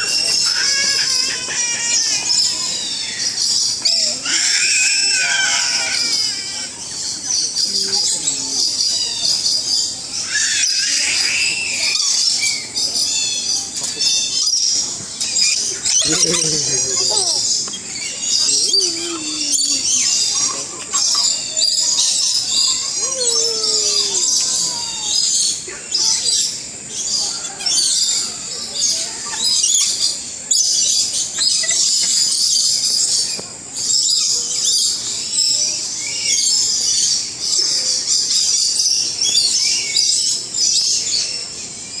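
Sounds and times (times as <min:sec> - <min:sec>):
parrots chattering: 0:00.0 - 0:41.3.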